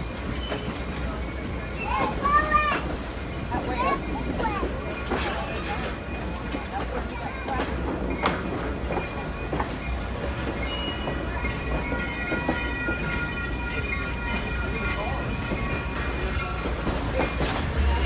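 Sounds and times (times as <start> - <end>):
train wheels rumbling: 0.0 - 18.0.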